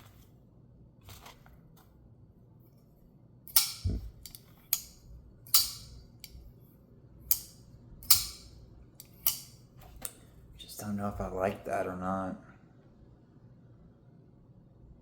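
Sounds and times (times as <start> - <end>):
flipper knife snapping open and shut: 3.5 - 6.4, 7.3 - 10.2.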